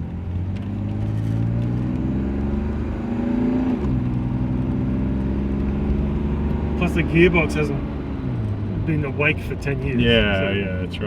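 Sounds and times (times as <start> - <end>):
car engine accelerating: 0.0 - 11.0.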